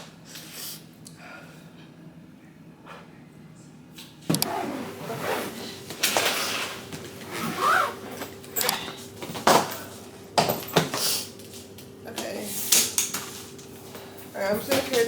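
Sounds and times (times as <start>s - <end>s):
objects knocking and clattering: 8.2s - 11.1s.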